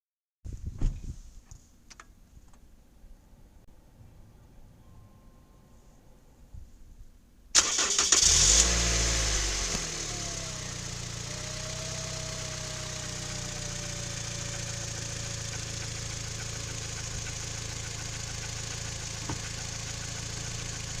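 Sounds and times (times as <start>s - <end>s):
car engine starting and idling: 7.5s - 21.0s.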